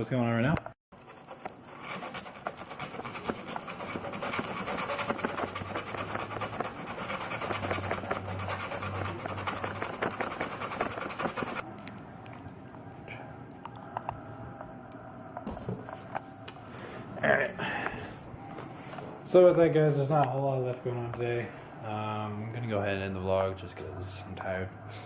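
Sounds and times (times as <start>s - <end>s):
sanding scraping hiss: 1.0s - 11.6s.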